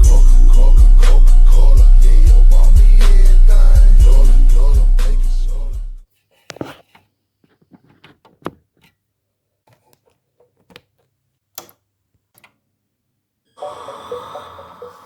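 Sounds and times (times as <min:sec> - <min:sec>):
bass-heavy music: 0:00.0 - 0:06.0
small clicks and knocks: 0:06.5 - 0:09.0, 0:09.6 - 0:12.6.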